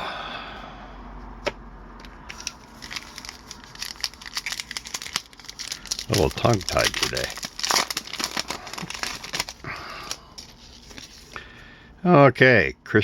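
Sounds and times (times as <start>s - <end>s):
foil wrapper crinkling and tearing: 2.3s - 11.4s.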